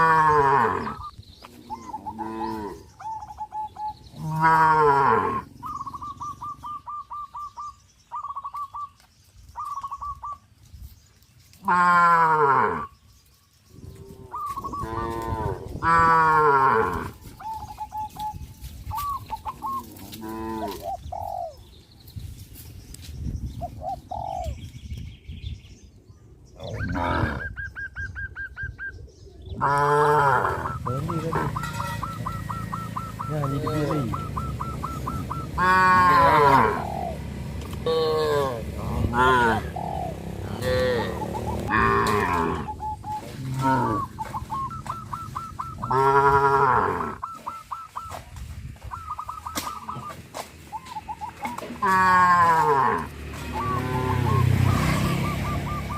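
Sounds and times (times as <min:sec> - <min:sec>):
cattle mooing: 0:00.0 - 0:02.9, 0:04.2 - 0:05.6, 0:11.6 - 0:12.9, 0:14.0 - 0:17.2, 0:19.7 - 0:20.8, 0:29.6 - 0:47.2, 0:51.7 - 0:55.2
loud low-pitched animal call: 0:00.0 - 0:07.4, 0:11.6 - 0:13.0, 0:13.8 - 0:17.7, 0:26.6 - 0:27.8, 0:29.5 - 0:48.2, 0:50.9 - 0:55.9
bird chirps: 0:00.3 - 0:04.5, 0:05.2 - 0:11.6, 0:12.8 - 0:15.8, 0:17.1 - 0:35.8, 0:39.7 - 0:51.9, 0:53.2 - 0:55.9.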